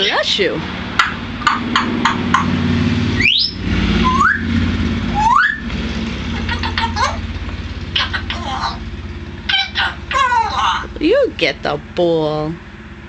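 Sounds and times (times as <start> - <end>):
low hum: 0.0 - 13.0
parrot clicking: 1.0 - 2.6
parrot rising whistles: 3.2 - 5.7.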